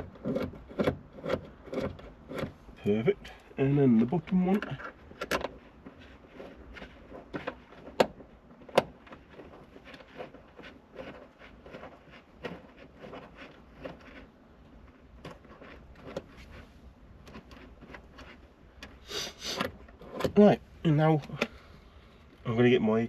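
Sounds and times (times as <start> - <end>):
small metallic clicks and knocks: 0.0 - 2.6, 4.0 - 14.2.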